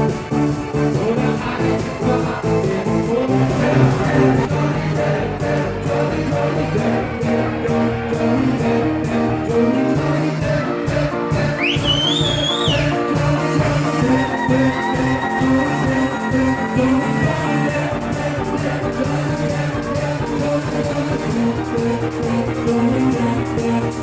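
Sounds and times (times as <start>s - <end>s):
live rock band with vocals: 0.0s - 24.0s
high tone: 2.4s - 4.5s, 11.7s - 23.3s.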